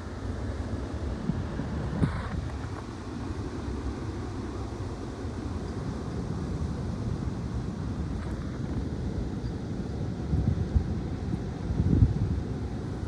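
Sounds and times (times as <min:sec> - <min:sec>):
strong gusty wind on microphone: 0:08.0 - 0:13.0.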